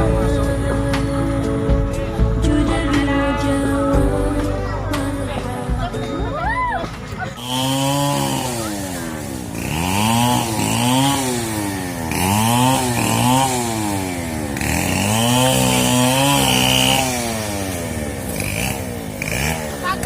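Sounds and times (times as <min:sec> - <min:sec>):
chainsaw revving: 0:07.3 - 0:20.0.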